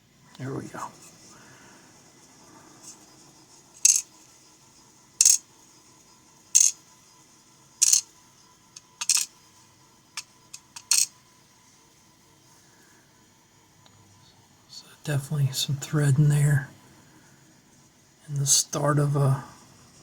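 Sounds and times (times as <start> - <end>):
metallic clicks of lock parts: 8.8 - 9.3, 10.5 - 11.1.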